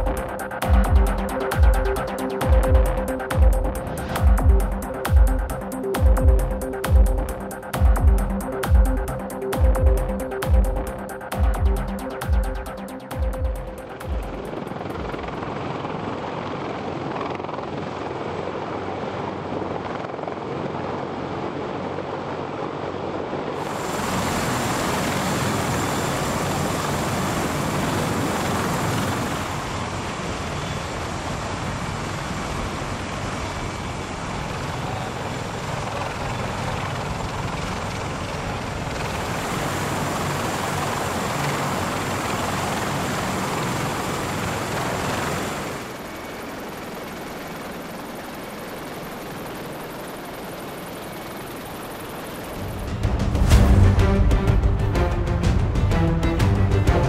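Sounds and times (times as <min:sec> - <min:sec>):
helicopter rotor and turbine noise: 0:00.0 - 0:57.0.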